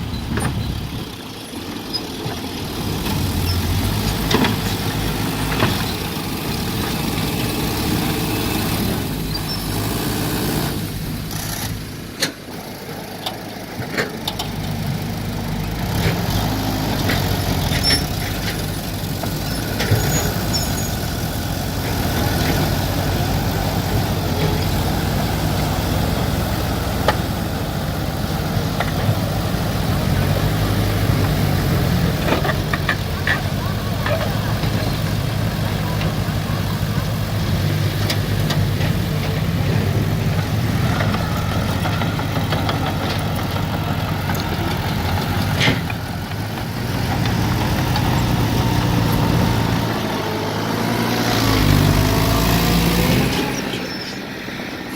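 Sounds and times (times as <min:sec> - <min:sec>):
excavator engine running: 0:00.0 - 0:54.9
sharp clicks and knocks: 0:30.5 - 0:36.2.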